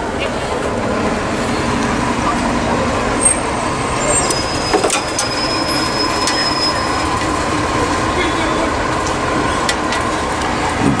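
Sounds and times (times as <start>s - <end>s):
bus engine rumbling: 0.0s - 11.0s
street traffic: 0.0s - 11.0s.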